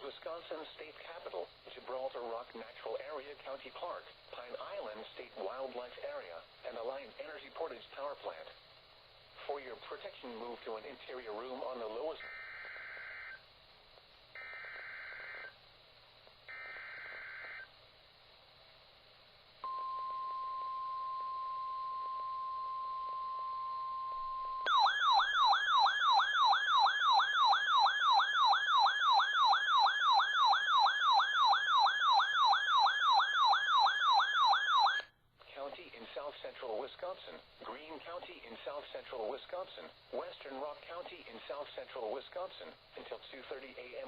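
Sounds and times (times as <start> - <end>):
warbling siren alarm: 12.2 - 13.4, 14.4 - 15.6, 16.5 - 17.7, 21.3 - 35.1
buzzy digital header tones: 14.4 - 15.6, 16.5 - 17.7
single-pitch alarm tone: 16.5 - 17.7, 19.6 - 35.1.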